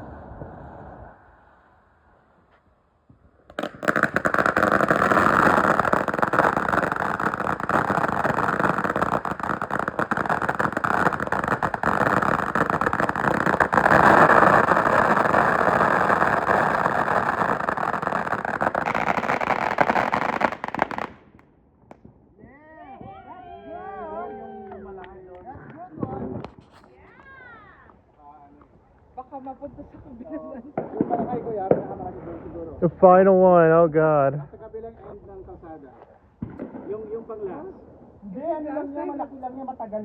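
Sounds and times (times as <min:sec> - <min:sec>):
firework hissing and crackling: 0:00.0 - 0:02.6, 0:03.4 - 0:21.4.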